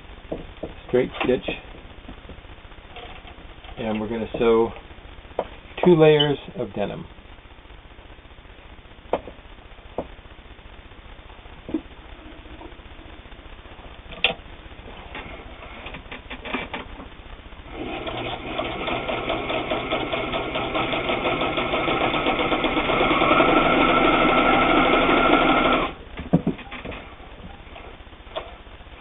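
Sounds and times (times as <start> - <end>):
sewing machine stitching: 17.7 - 26.0.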